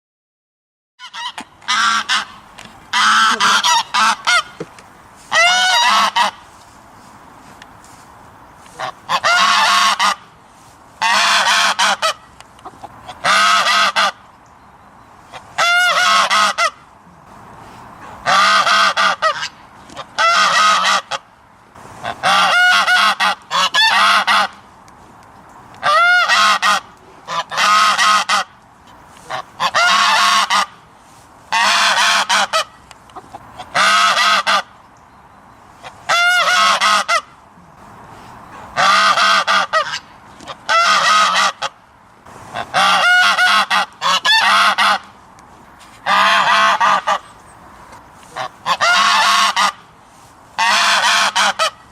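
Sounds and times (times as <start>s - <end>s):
goose honking: 1.0s - 6.6s, 8.6s - 10.3s, 11.0s - 14.2s, 15.3s - 16.8s, 18.0s - 21.3s, 22.0s - 24.6s, 25.8s - 30.8s, 31.5s - 34.8s, 35.8s - 37.4s, 38.5s - 41.8s, 42.5s - 45.2s, 46.0s - 49.9s, 50.6s - 51.9s.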